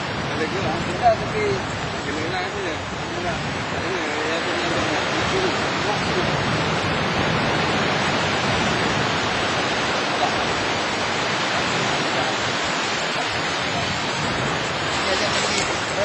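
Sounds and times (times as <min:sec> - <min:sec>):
waves breaking on beach: 0:00.0 - 0:16.0
wind on microphone: 0:00.0 - 0:16.0.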